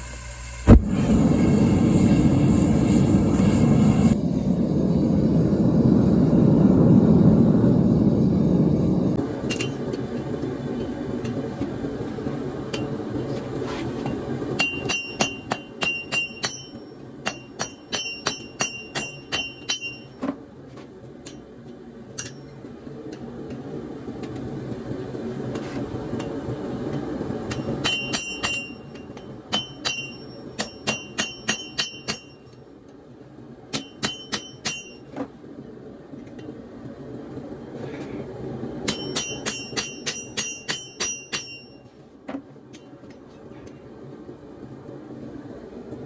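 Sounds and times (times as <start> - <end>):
low rushing noise: 0.7 - 9.4
hammer ringing on anvil: 14.6 - 20.2, 22.2 - 22.6, 27.5 - 32.6, 33.7 - 35.2, 38.9 - 41.9.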